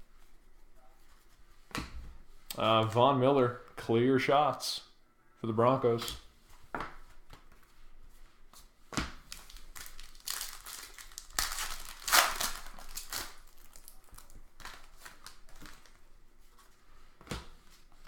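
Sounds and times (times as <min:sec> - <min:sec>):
card pack wrapper crinkling: 0:09.3 - 0:16.0.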